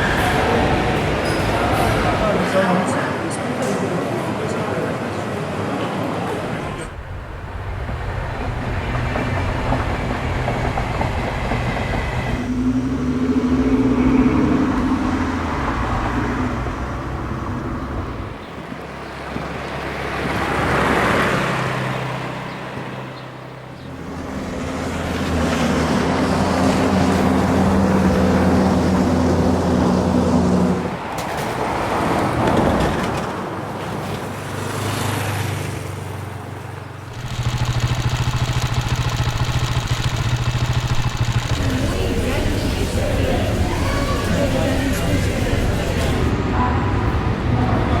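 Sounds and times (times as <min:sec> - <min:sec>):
engine drone: 0:06.6 - 0:31.1, 0:37.0 - 0:48.0
wash of noise: 0:37.1 - 0:47.0.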